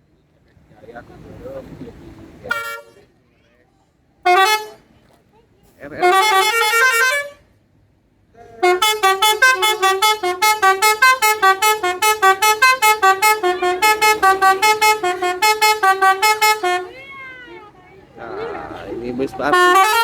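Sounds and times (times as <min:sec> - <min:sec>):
bus horn staccato tune: 0:02.5 - 0:03.1, 0:04.2 - 0:04.9, 0:05.9 - 0:07.6, 0:08.5 - 0:17.8, 0:18.5 - 0:20.0.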